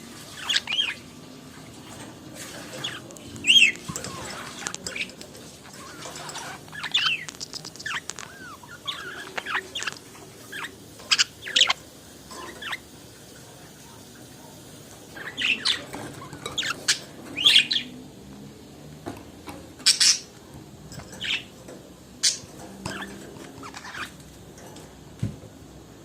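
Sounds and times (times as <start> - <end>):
budgerigars chirping and warbling: 0.2 - 1.0, 2.4 - 12.9, 15.0 - 18.0, 19.8 - 20.3, 21.0 - 21.6, 22.2 - 24.2.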